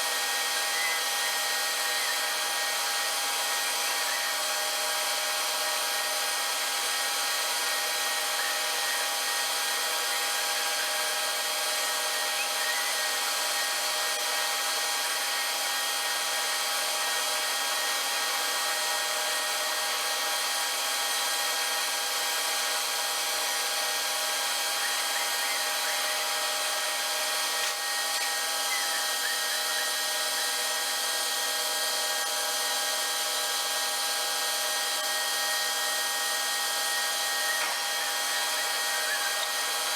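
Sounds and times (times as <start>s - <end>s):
machine whine: 0.0s - 39.9s
machine cutting steel: 23.2s - 32.4s, 34.8s - 39.9s.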